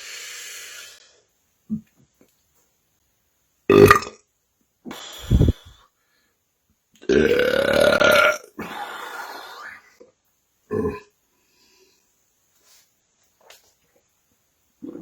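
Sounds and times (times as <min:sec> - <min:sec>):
man burping: 0:03.7 - 0:04.2, 0:07.0 - 0:08.7, 0:10.7 - 0:11.1.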